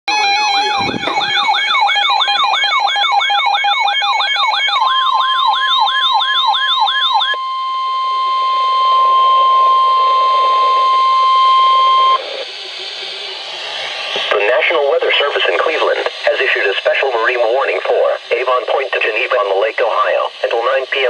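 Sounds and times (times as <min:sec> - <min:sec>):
sirens sweeping: 0:00.1 - 0:18.8
steady alarm tone: 0:00.1 - 0:21.0
faint radio hiss: 0:12.2 - 0:21.0.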